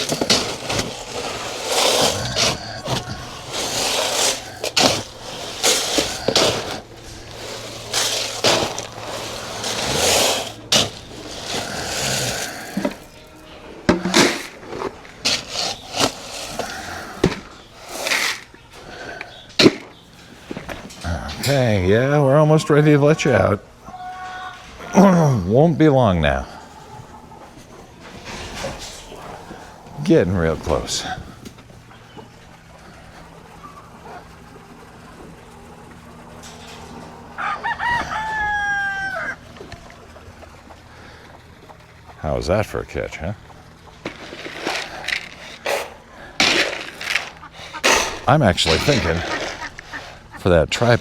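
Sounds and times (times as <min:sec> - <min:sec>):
sharp knocks and scrapes: 0:00.0 - 0:18.6, 0:43.8 - 0:51.0
rustling: 0:00.0 - 0:21.1, 0:43.6 - 0:51.0
rooster crowing: 0:37.1 - 0:39.9.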